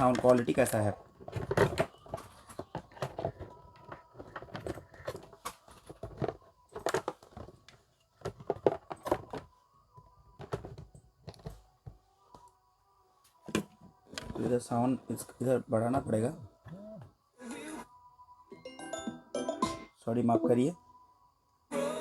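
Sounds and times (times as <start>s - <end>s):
faint steady tone: 9.4s - 22.0s.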